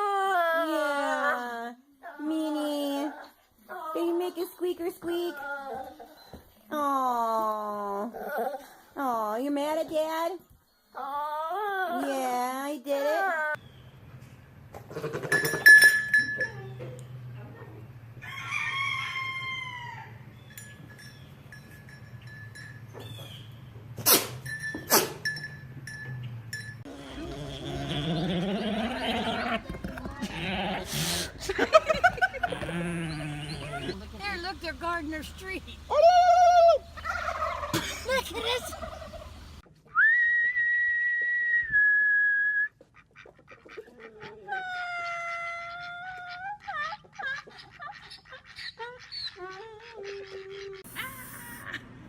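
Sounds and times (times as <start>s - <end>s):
pet sneezing: 30.7s - 31.5s
long high whistle: 40.0s - 42.7s.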